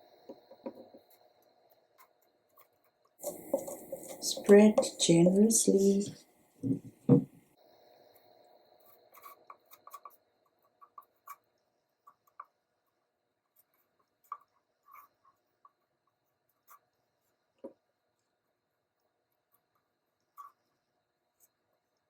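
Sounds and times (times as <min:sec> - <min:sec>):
spreader scraping cardboard: 0:03.2 - 0:04.6
soft knock: 0:07.0 - 0:07.3.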